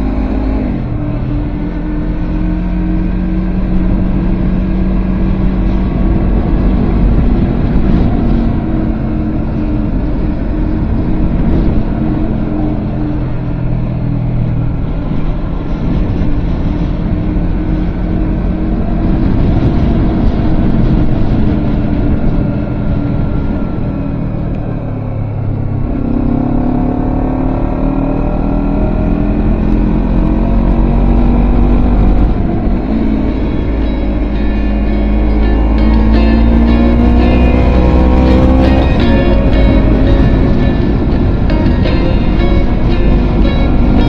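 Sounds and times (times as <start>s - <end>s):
motorcycle engine revving: 0.0s - 44.0s.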